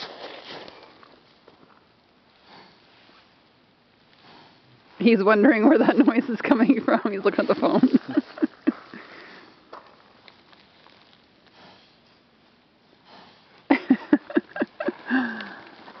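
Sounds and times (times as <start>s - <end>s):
horse sniffing: 4.1s - 9.7s, 11.5s - 12.1s, 13.0s - 16.0s.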